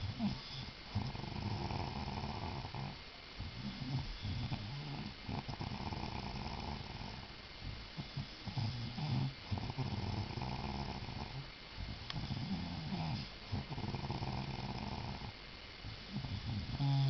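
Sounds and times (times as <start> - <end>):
person snoring loudly: 0.0 - 3.0, 3.6 - 7.2, 8.4 - 11.4, 12.3 - 15.3, 16.1 - 17.0.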